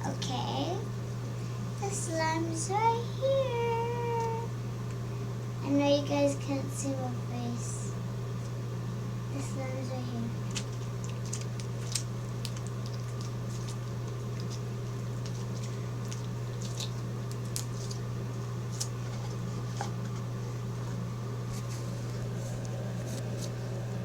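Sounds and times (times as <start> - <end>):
slime squished by hand: 10.5 - 18.1.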